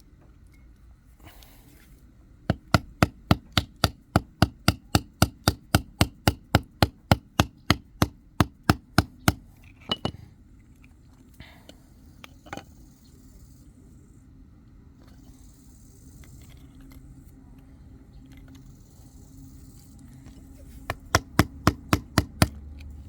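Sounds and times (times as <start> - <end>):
sharp knocks on screwdriver handle: 2.5 - 9.4, 20.9 - 22.6.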